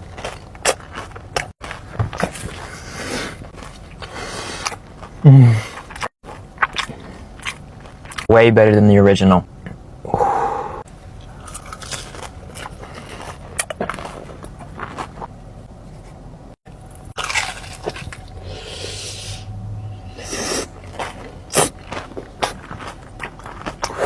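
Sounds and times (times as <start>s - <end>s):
wet chewing: 0.0s - 8.3s, 11.2s - 15.3s, 16.8s - 19.0s, 20.1s - 24.0s
crunchy bites: 16.8s - 18.4s, 20.2s - 24.0s.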